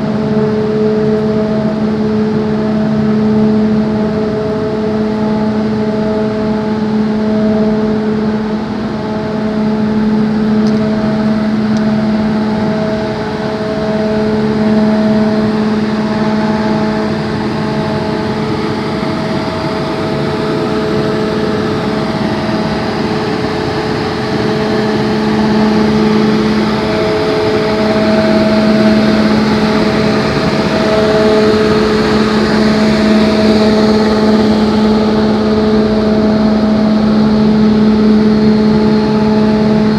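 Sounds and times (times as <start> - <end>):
grain dryer blower droning: 0.0 - 39.9
loud rush of air: 8.5 - 39.9.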